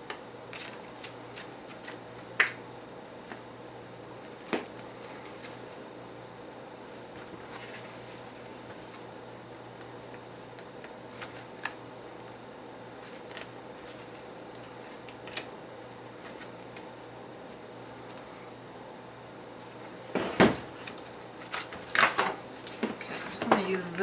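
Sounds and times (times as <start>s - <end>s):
steady low hum: 0.0s - 24.0s
paper rustling: 0.5s - 2.3s, 4.2s - 5.8s, 6.8s - 9.0s, 11.1s - 11.8s, 13.0s - 16.8s, 19.6s - 23.6s.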